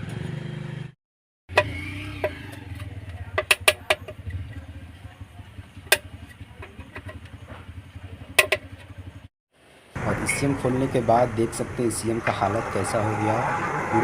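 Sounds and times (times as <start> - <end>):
low motor hum: 10.0 - 14.0.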